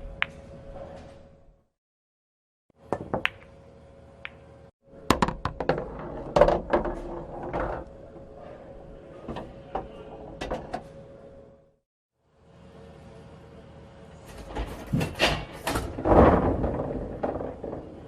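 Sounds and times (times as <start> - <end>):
billiard balls clicking: 2.9 - 3.6, 5.1 - 8.0, 16.0 - 18.0.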